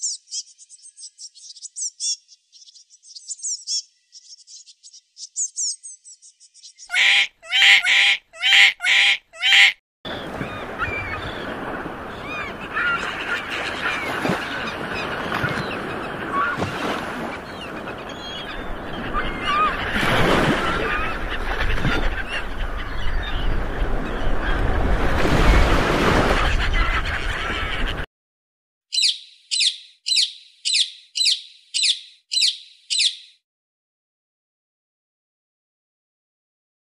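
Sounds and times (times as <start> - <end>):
high-pitched bird chirping: 0.0 - 9.8, 28.9 - 33.4
chorus of birds calling: 0.0 - 28.1, 28.9 - 33.4
large bird calling: 6.6 - 20.0, 20.6 - 24.7, 28.9 - 33.4.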